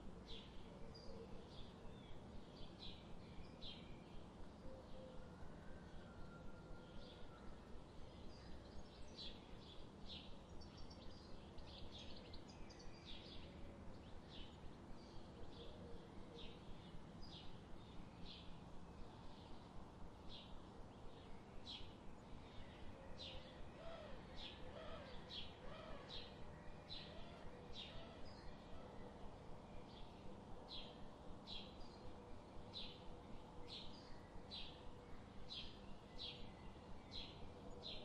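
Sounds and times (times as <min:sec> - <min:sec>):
faint background hiss: 0:00.0 - 0:38.0.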